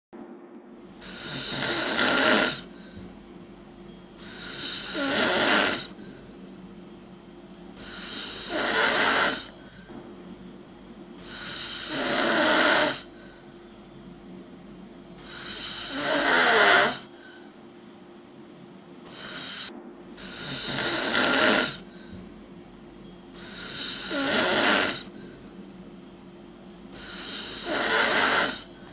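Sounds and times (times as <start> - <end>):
person snoring: 1.0 - 3.0, 4.2 - 6.3, 7.8 - 9.9, 11.2 - 13.4, 15.2 - 17.4, 19.1 - 22.2, 23.4 - 25.4, 27.0 - 28.9.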